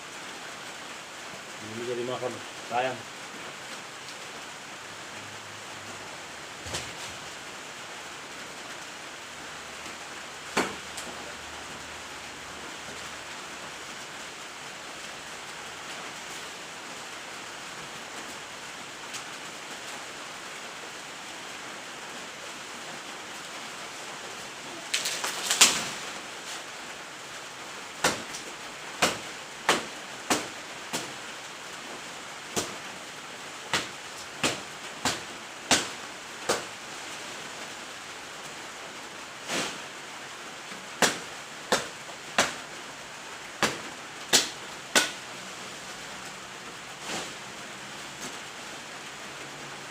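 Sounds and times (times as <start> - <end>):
steady hiss: 0.0 - 49.9
chopping strikes on wood: 10.6 - 10.8, 28.0 - 28.4, 29.0 - 31.1, 33.7 - 36.7, 41.0 - 42.6, 43.6 - 45.2.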